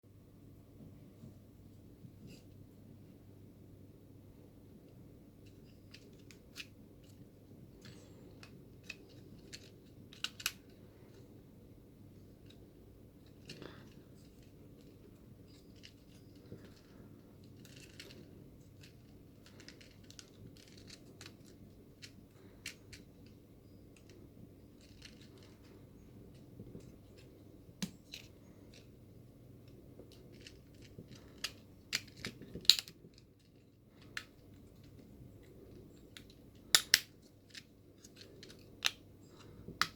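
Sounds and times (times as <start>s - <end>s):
plastic toy parts clicking and snapping: 5.4s - 7.2s, 7.8s - 10.8s, 15.7s - 23.4s, 24.8s - 28.9s, 29.6s - 39.9s.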